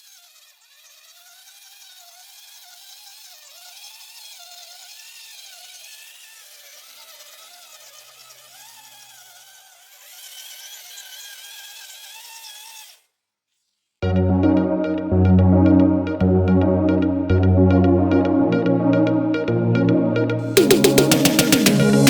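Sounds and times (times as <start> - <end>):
loud electronic music: 14.0 - 22.0.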